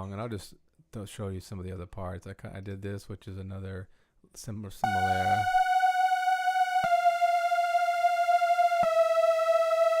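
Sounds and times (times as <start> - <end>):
synthesizer long held notes: 4.8 - 10.0.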